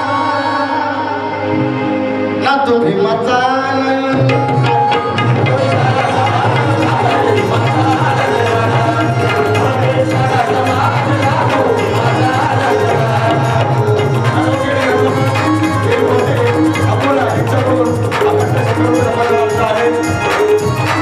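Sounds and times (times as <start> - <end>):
repeating folk melody: 4.2 - 21.0
hand drums steady rhythm: 4.3 - 21.0.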